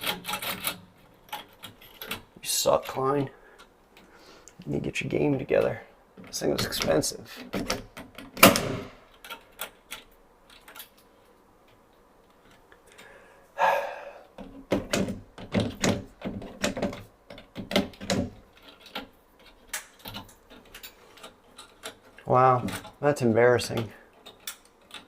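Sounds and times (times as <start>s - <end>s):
rustle of wire handled: 15.8s - 25.0s.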